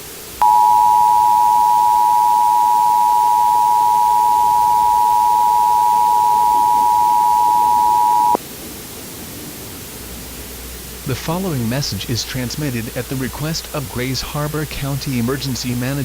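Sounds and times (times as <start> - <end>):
two-tone alert signal: 0.4 - 8.4.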